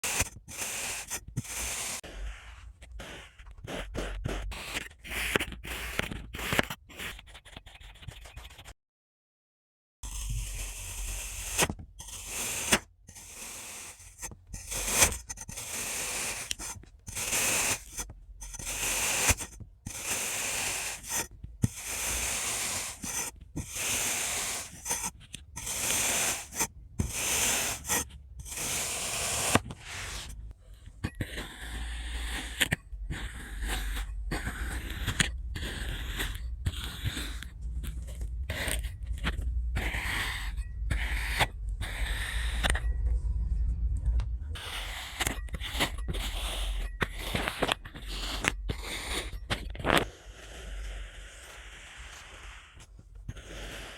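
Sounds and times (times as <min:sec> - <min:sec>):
knife cutting crunchy sand: 0:00.0 - 0:07.1, 0:10.1 - 0:30.4
low hum: 0:37.4 - 0:46.2.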